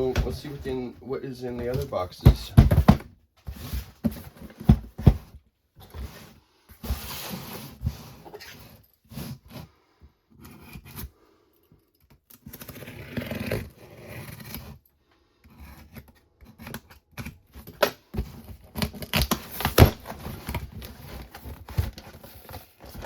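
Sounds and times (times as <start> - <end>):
cardboard box cutting and tearing: 12.3 - 14.8, 15.5 - 23.0
tape tearing: 18.6 - 23.0.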